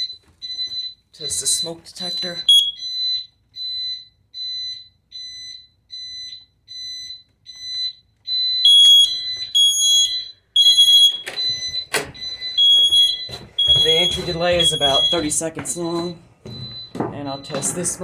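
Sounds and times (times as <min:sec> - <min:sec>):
louder alarm beeping: 0:00.0 - 0:18.0
smoke detector beeping: 0:01.2 - 0:02.9, 0:08.6 - 0:17.7.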